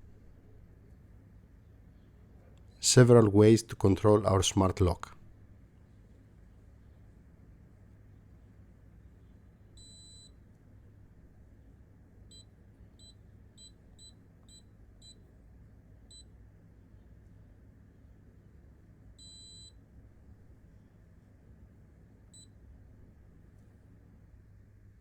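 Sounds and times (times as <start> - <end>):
keypad long beep: 9.8 - 10.4, 12.3 - 15.2, 19.2 - 19.8.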